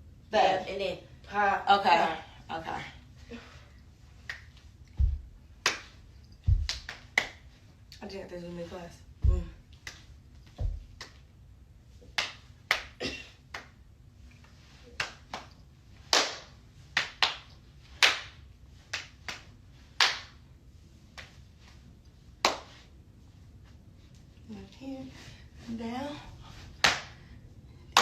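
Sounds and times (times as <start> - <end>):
hand claps and slaps: 4.2 - 7.6, 9.2 - 11.3, 12.0 - 13.8, 14.4 - 20.4, 21.1 - 21.8, 22.4 - 22.9, 26.8 - 27.3
low foot stomp: 5.0 - 5.4, 6.5 - 6.8, 9.2 - 9.6, 10.6 - 10.9.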